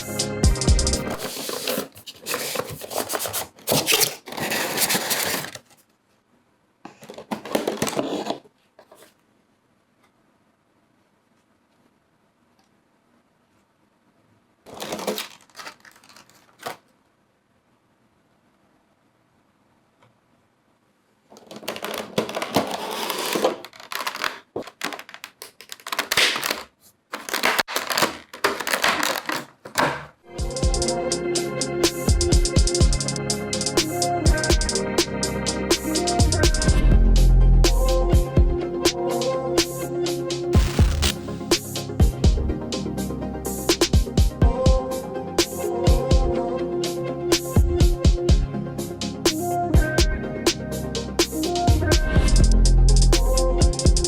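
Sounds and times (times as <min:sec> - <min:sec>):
scraping and rubbing by hand: 0:01.1 - 0:05.8, 0:21.5 - 0:29.5.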